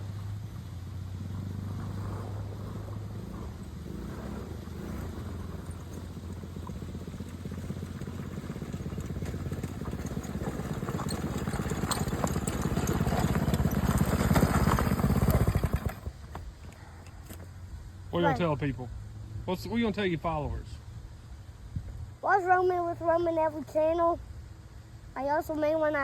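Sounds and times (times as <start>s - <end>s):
atv engine running: 0.0s - 20.0s.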